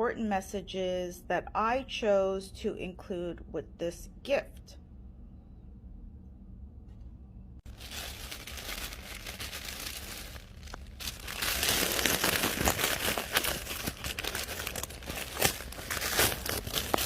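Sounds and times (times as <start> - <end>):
packaging crinkling and rustling: 7.6 - 17.0.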